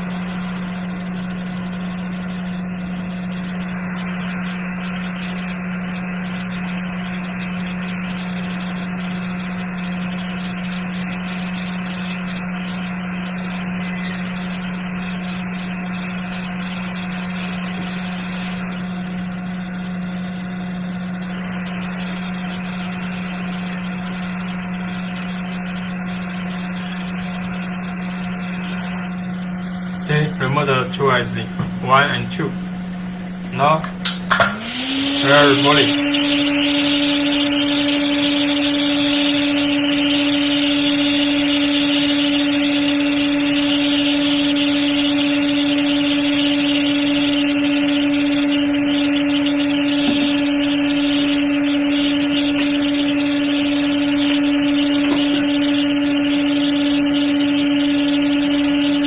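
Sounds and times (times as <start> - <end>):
hot air hiss: 21.2 - 59.0
low hum: 26.8 - 59.0.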